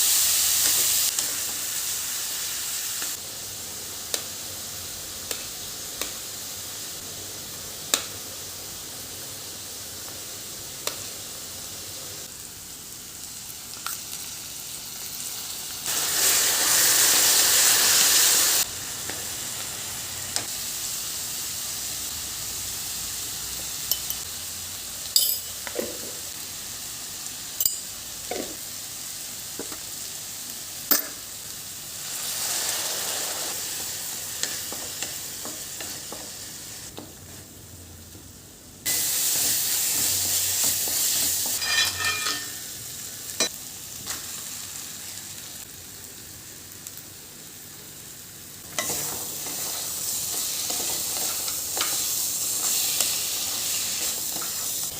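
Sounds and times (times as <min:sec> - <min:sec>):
food sizzling in a pan: 0:00.0 - 0:54.9
spatula scraping a pan: 0:41.5 - 0:42.6.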